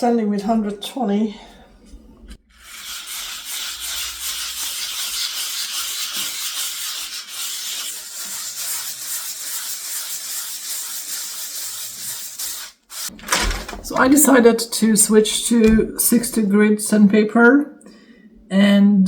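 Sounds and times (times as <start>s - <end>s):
sandpaper rubbing on wood: 2.5s - 13.2s.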